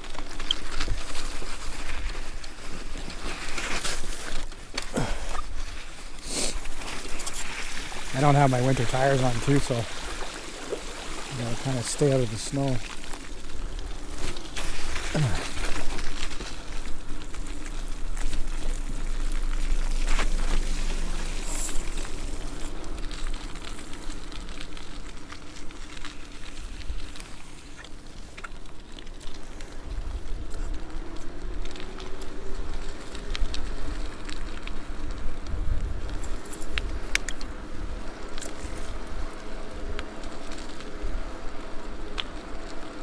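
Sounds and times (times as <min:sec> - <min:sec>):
wind rumbling on microphone: 0:00.0 - 0:28.2, 0:28.8 - 0:43.0
tyres rolling on wet slush: 0:00.0 - 0:43.0.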